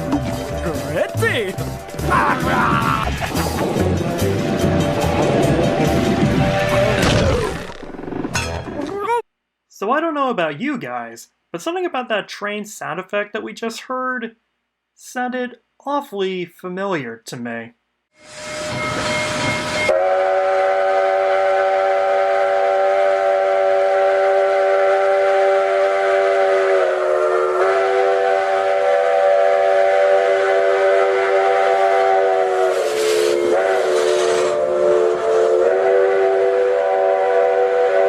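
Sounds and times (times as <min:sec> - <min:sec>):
steam whistle chord: 0:03.4 - 0:07.0, 0:18.2 - 0:38.0
rush of steam: 0:18.2 - 0:38.0.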